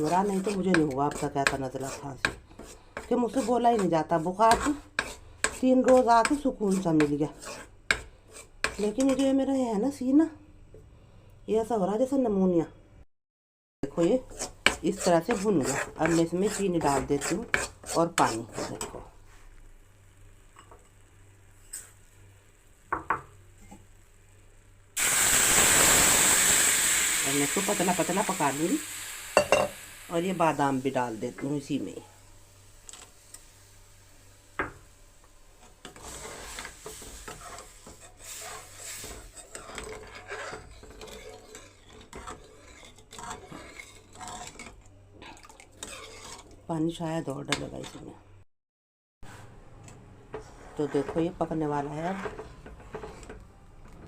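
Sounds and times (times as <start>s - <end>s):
spoon scraping a pan: 0.0s - 9.4s, 14.0s - 19.4s, 35.6s - 46.6s, 47.5s - 48.1s, 50.3s - 53.4s
loud sizzle of water in pan: 19.5s - 40.9s.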